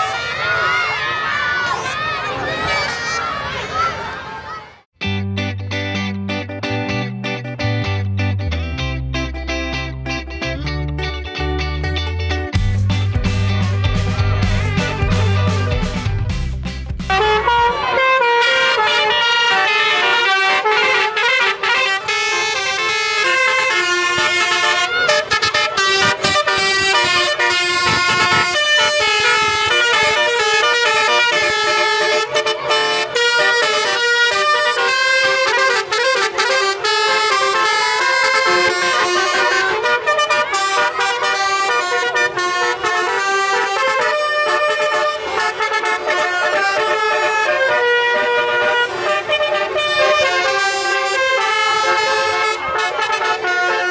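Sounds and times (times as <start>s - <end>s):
vehicle melody horn: 13.6s - 16.3s, 17.1s - 53.9s.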